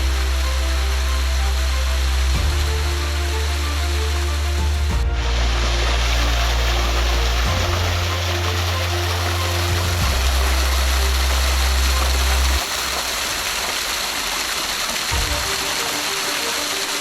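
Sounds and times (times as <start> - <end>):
music with slow bass notes: 0.0 - 12.8
waterfall rushing: 0.0 - 17.0.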